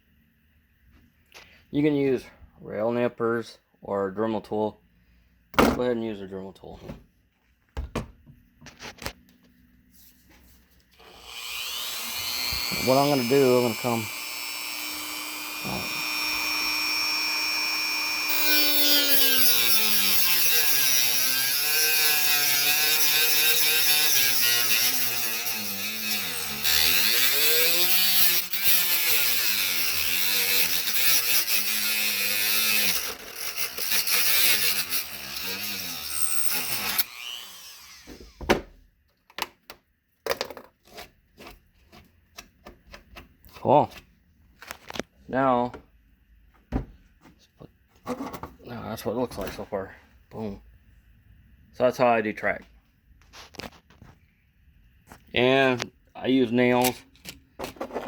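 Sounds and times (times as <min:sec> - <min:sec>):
rotary tool whining: 0:10.9 - 0:38.4
cutoff wheel grinding metal: 0:11.0 - 0:38.4.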